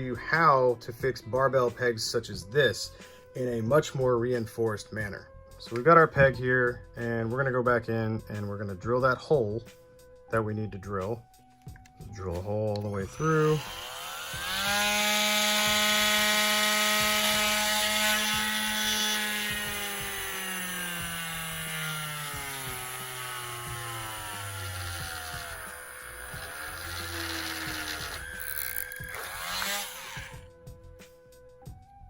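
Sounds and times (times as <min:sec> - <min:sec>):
electric drill motor whine: 0:13.0 - 0:30.5.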